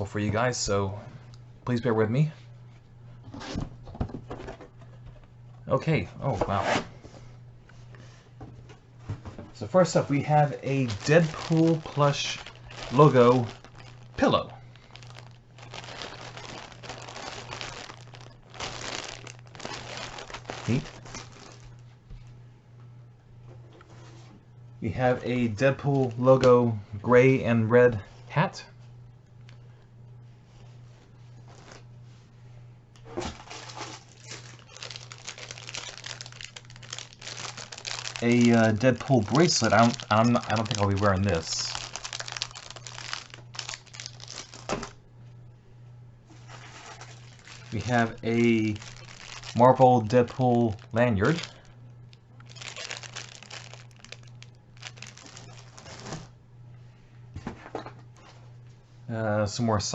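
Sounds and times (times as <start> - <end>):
plastic packaging crinkling and tearing: 9.7 - 21.8, 33.2 - 45.0, 46.4 - 56.3.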